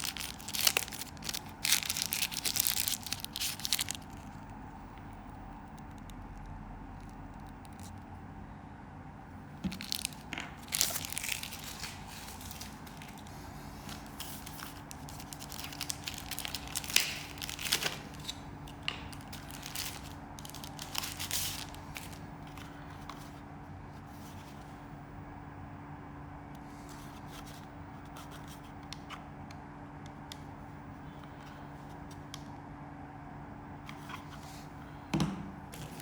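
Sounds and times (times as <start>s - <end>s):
packaging crinkling and rustling: 0.0s - 5.1s, 9.5s - 23.4s, 35.6s - 36.0s.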